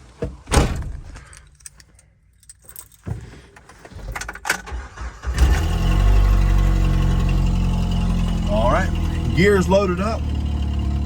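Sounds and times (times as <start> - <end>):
keys jingling: 1.2 - 4.4
vehicle engine starting and idling: 4.1 - 11.0.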